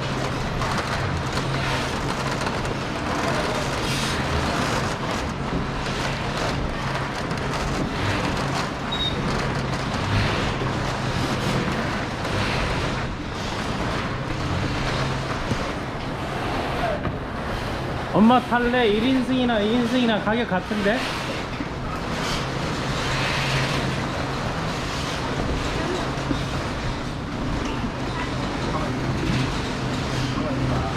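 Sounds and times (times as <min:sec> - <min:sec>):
wind: 0:00.0 - 0:30.9.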